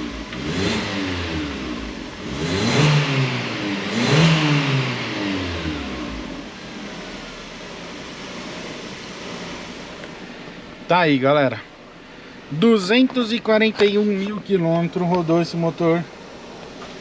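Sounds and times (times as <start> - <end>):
car engine revving: 0.0 - 10.9
car engine idling: 0.0 - 17.0.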